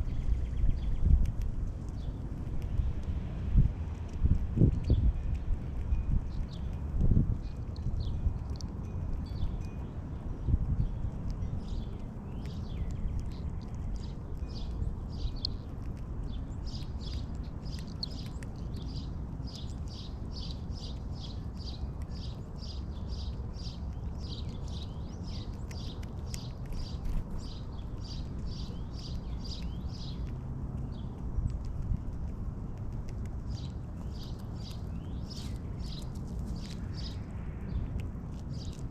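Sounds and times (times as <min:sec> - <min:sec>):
low background rumble: 0:00.0 - 0:38.9
bird chirping: 0:07.4 - 0:31.7, 0:33.5 - 0:37.9, 0:38.5 - 0:38.9.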